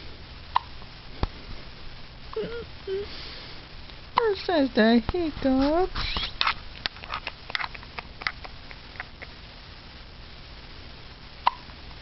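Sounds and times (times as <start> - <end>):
child hiccuping: 2.3 - 2.7.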